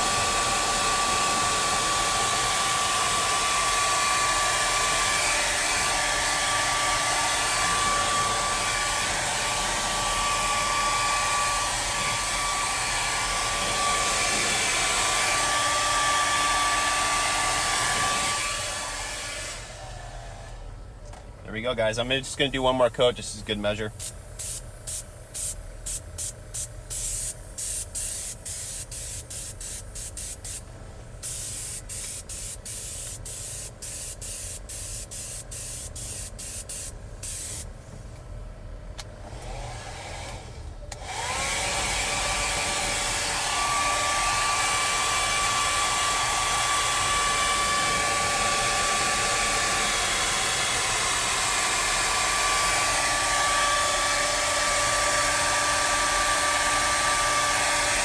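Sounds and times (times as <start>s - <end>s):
hair dryer blowing: 0.0s - 20.8s, 39.2s - 58.0s
spray gun hissing bursts: 22.4s - 37.7s, 41.1s - 58.0s.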